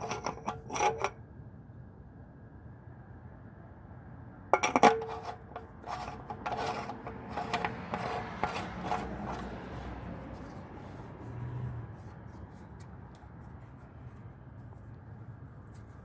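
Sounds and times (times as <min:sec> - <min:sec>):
rubbing scraping strokes: 0:05.0 - 0:11.4.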